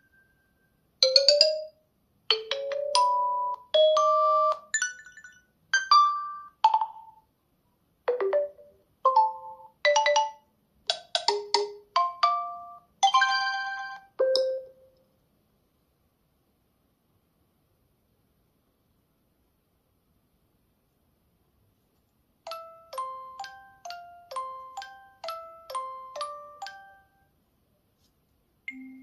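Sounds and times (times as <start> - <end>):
phone ringtone melody: 0.0 - 7.2, 8.1 - 10.5, 12.0 - 14.9, 22.5 - 27.3, 28.7 - 29.0.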